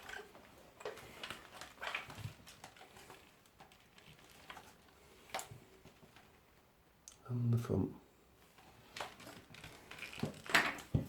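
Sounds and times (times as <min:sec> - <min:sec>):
handling knocks and clicks: 0:08.8 - 0:11.0.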